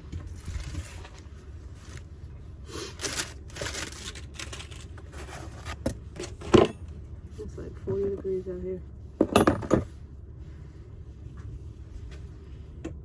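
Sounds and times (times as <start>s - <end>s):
handling rustling and scraping: 0.0s - 8.6s.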